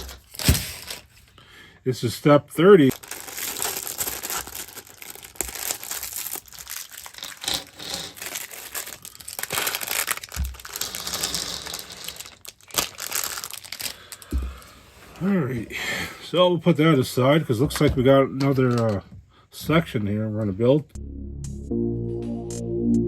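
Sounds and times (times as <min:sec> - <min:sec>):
plastic bags crinkling: 0:00.0 - 0:01.3, 0:02.9 - 0:14.9
plastic pieces clicking: 0:06.5 - 0:14.3, 0:17.8 - 0:19.0.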